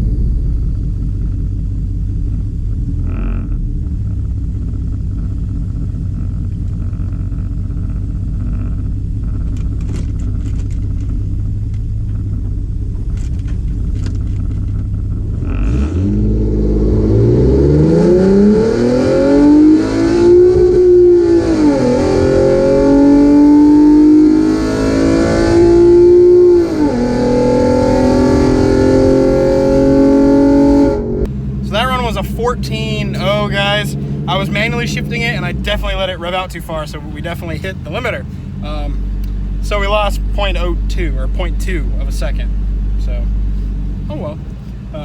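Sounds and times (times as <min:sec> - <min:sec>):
car engine accelerating hard: 0:00.0 - 0:45.0
car engine idling: 0:00.0 - 0:45.0.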